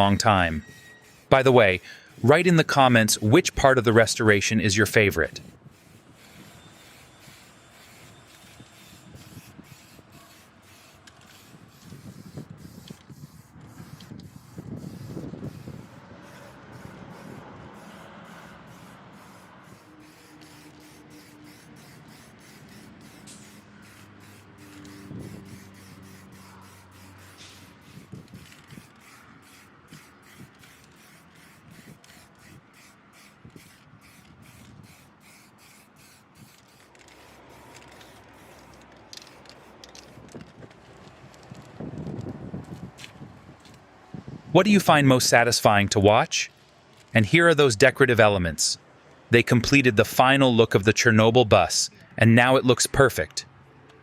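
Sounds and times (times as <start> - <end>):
paint spray gun hissing: 0.6 - 3.6, 5.4 - 40.2.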